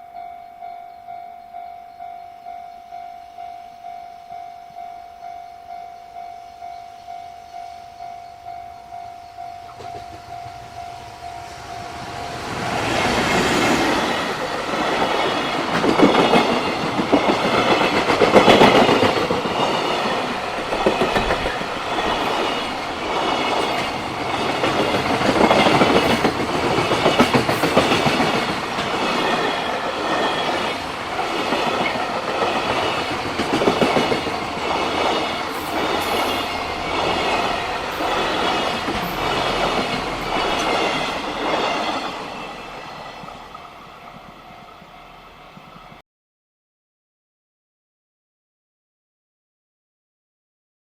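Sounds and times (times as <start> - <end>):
train wheels clacking over rails: 9.4 - 43.6.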